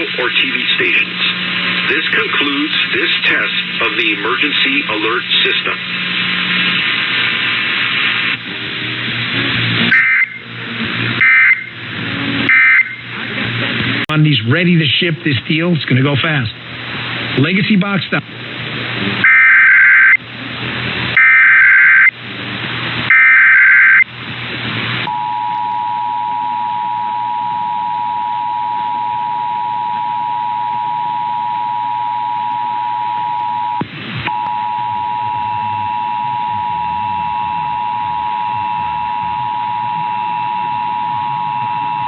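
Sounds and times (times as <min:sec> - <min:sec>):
digital header bursts: 0:09.2 - 0:16.6, 0:19.2 - 0:20.2, 0:21.2 - 0:22.1, 0:23.1 - 0:24.1
two-tone attention signal: 0:09.8 - 0:10.5, 0:11.2 - 0:11.8, 0:12.4 - 0:13.1, 0:19.2 - 0:20.2, 0:21.2 - 0:22.1, 0:23.1 - 0:24.0, 0:25.1 - 0:42.0.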